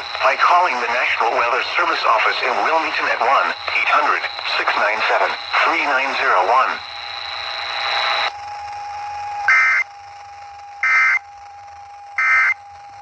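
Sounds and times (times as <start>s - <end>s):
steady hiss: 0.0s - 6.8s
digital data tone bursts: 0.0s - 8.3s, 9.5s - 9.9s, 10.8s - 11.2s, 12.2s - 12.6s
faint high whine: 0.0s - 13.0s.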